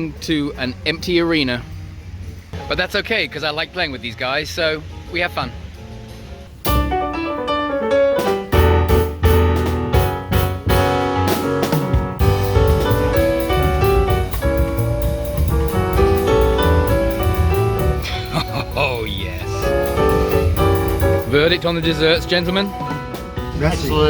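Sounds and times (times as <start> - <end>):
bass: 3.8 - 24.0
piano chords and runs: 4.8 - 24.0
drum and cymbal hits: 6.6 - 7.4, 8.2 - 24.0.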